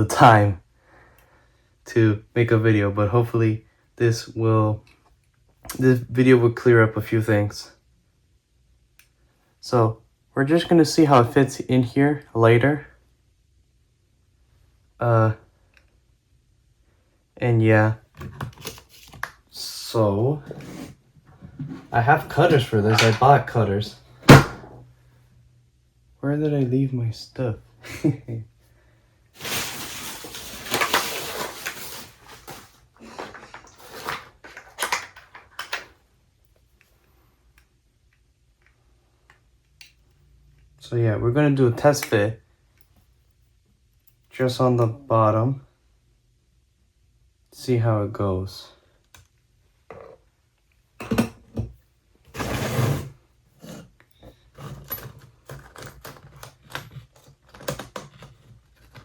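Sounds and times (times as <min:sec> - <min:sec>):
loud scrape: 0:20.4 - 0:21.0, 0:52.3 - 0:53.9
scrapes and knocks: 0:20.4 - 0:23.4
rustling and clatter of objects: 0:20.4 - 0:23.5, 0:29.3 - 0:36.0, 0:51.0 - 0:59.0
rummaging through tools: 0:20.4 - 0:23.6, 0:29.4 - 0:36.0, 0:52.3 - 0:59.0.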